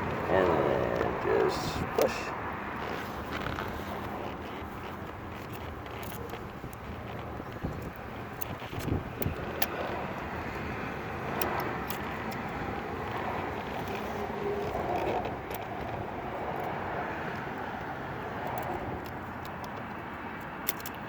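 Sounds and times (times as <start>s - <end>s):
outdoor background noise: 0.0s - 21.0s
faint clicks and rustles of hands: 0.9s - 21.0s.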